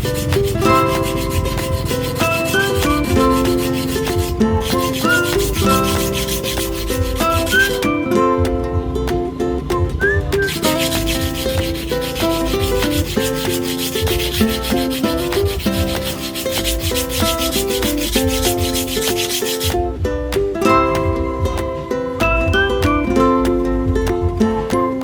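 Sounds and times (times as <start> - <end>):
knife blade scraping on sharpener: 0.0 - 7.8, 10.5 - 19.8
ukulele-style music: 0.0 - 25.0.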